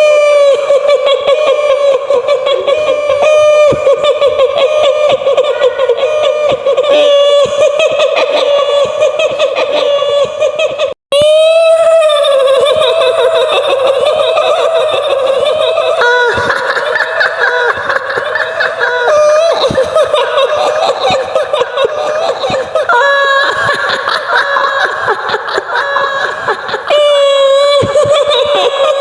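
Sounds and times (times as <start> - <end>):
woman's shrill cackling laughter: 11.8 - 29.0.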